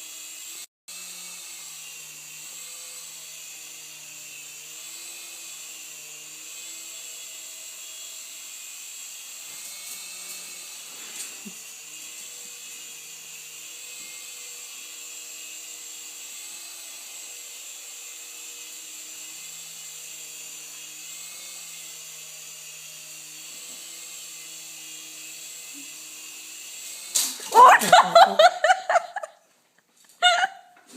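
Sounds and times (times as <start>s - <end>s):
rc helicopter motor whine: 0.0s - 29.3s.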